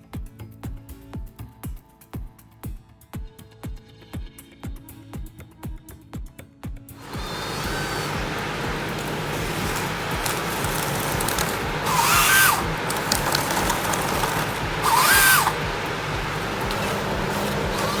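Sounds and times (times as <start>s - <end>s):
power tool revving whine: 7.0s - 18.0s
steady engine hum: 7.0s - 18.0s.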